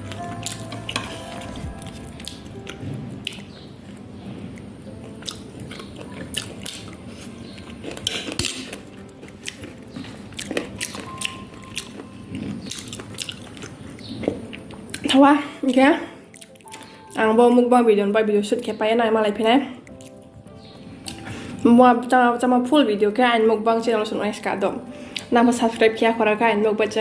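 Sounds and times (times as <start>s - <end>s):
person chewing food: 0.0s - 15.1s, 16.2s - 17.2s, 19.8s - 21.6s
wet mouth clicks and smacks: 16.4s - 16.9s.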